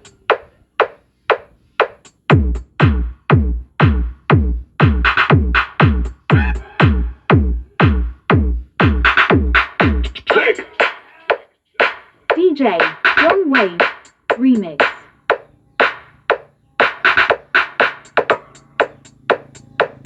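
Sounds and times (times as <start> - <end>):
electronic dance music: 0.0 - 20.0
deep bass kick: 2.3 - 10.2.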